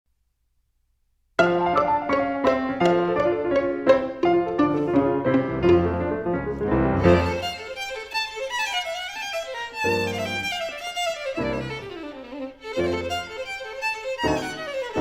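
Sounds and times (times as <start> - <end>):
double bass notes: 1.4 - 7.4
jazz combo chords: 1.4 - 7.4
jazz violin melody: 1.4 - 15.0.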